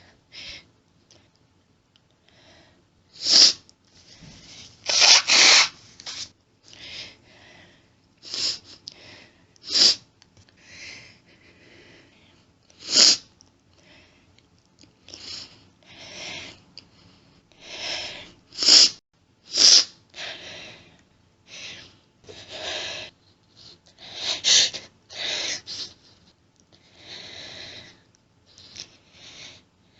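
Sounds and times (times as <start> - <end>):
nose blowing: 12.8 - 13.2.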